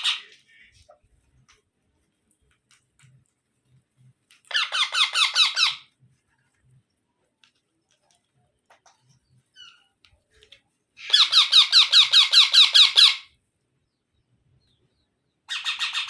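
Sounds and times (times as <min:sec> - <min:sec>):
parrot chick squeaky calls: 0:00.0 - 0:00.7, 0:04.5 - 0:05.9, 0:11.0 - 0:13.3, 0:15.5 - 0:16.0.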